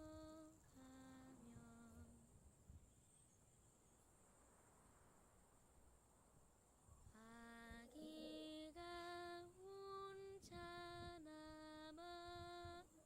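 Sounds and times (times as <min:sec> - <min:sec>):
soft lullaby-like tune: 0:00.0 - 0:02.2, 0:07.2 - 0:13.0.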